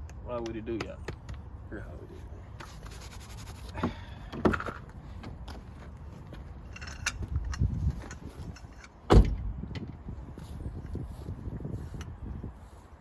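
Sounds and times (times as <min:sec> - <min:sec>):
metal clicks and knocks from tools: 0:06.7 - 0:09.0.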